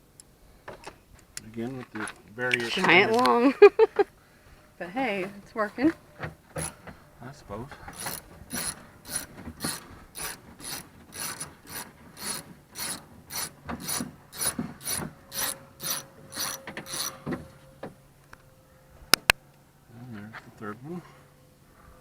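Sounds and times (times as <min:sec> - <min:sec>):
socket ratchet pawl clicking: 0:07.9 - 0:17.2.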